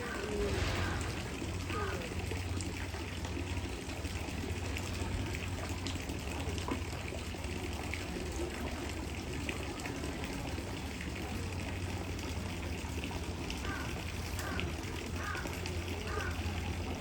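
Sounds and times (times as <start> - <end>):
low hum: 0.0 - 3.6
running water: 0.0 - 17.0.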